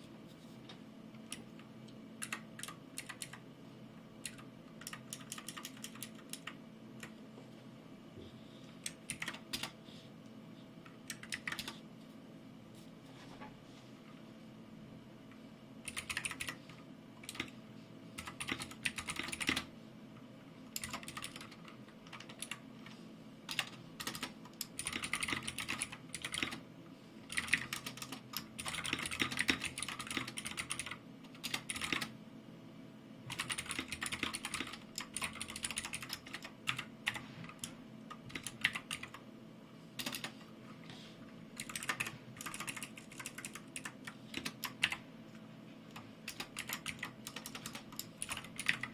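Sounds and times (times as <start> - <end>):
mechanical keyboard typing: 2.2 - 3.4, 4.2 - 7.1, 8.8 - 9.8, 11.1 - 11.8, 15.8 - 16.6, 17.2 - 17.5, 18.2 - 19.7, 20.8 - 22.6, 23.5 - 26.6, 27.3 - 32.1, 33.3 - 39.2, 40.0 - 40.4, 41.6 - 45.0, 45.9 - 48.9.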